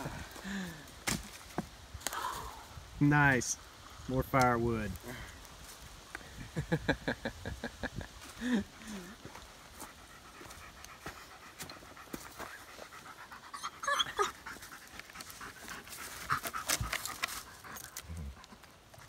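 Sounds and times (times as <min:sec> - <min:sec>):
dog panting: 0:08.9 - 0:19.0.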